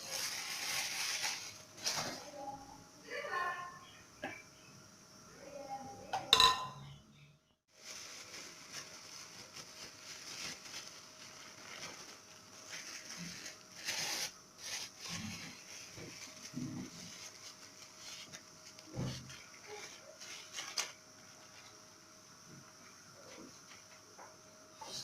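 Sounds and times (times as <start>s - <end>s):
plastic bags rustling: 0.0s - 2.6s, 7.7s - 21.8s.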